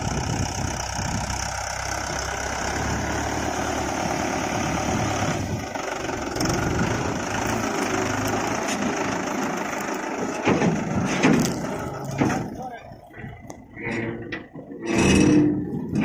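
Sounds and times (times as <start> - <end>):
diesel engine running: 0.0 - 16.0
loud knocks: 10.4 - 12.6.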